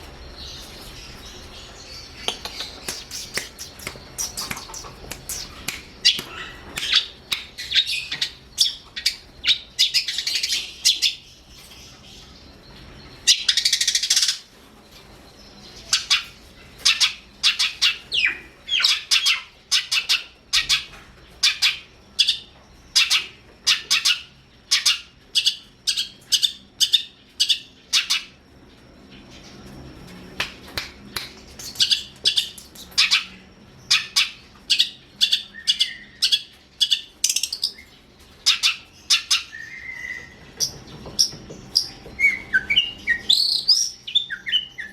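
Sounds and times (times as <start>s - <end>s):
shrike singing: 0.0s - 14.5s.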